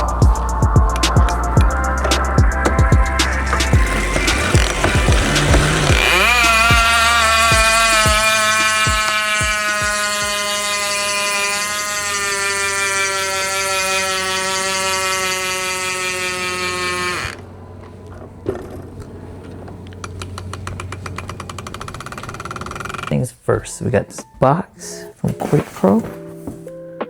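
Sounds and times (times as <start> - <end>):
buzzy synth chord over a beat: 0.0 - 11.7
fast ticks: 0.0 - 17.4, 19.8 - 23.2.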